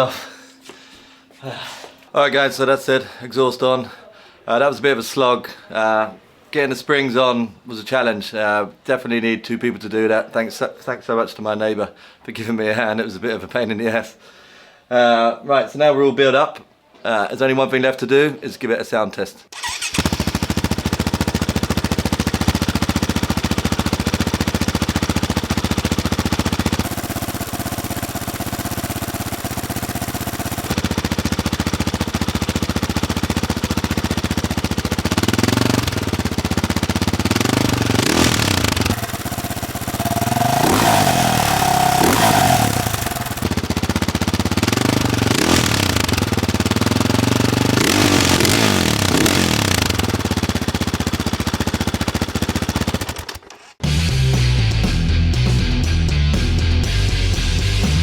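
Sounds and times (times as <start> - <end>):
motorcycle engine revving: 19.6 - 58.0.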